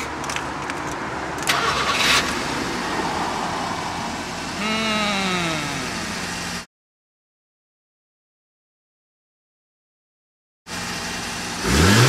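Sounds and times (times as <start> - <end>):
car engine starting and running: 0.0 - 6.6, 10.7 - 12.0.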